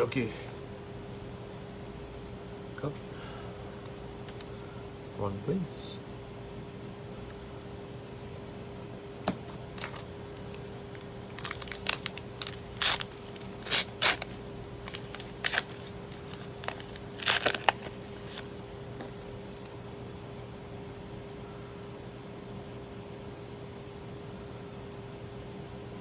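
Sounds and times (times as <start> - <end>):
wrapper tearing and crinkling: 9.8 - 18.5.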